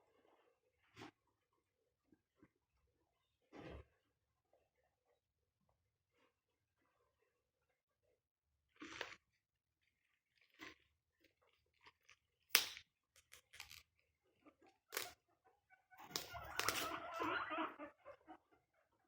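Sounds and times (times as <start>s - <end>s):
guinea pigs rustling and crunching: 8.8s - 15.2s, 16.0s - 17.3s.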